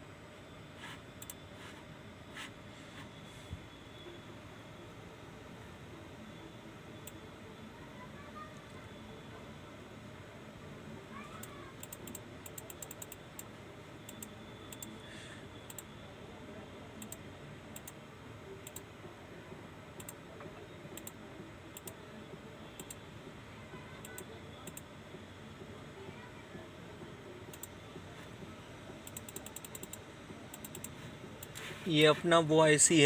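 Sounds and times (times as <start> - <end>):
keyboard and mouse clicking: 11.8 - 13.2, 29.1 - 31.7
low steady hiss: 30.9 - 33.0.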